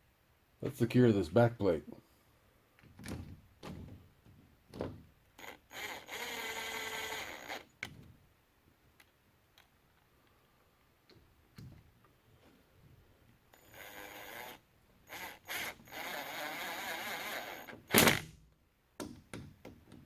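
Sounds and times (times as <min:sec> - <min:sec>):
power driver whining: 0:05.4 - 0:07.7, 0:13.6 - 0:18.3.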